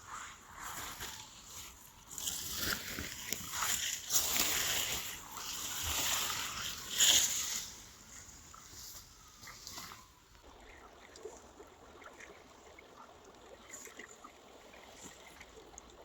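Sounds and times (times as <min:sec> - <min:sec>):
dry twigs rustling and crackling: 0:00.1 - 0:15.8.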